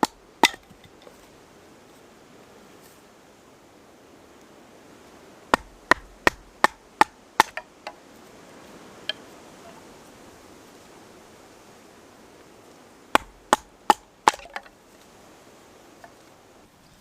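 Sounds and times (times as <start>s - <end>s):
wood being chopped: 0.0s - 1.1s, 5.5s - 8.0s, 13.1s - 14.7s.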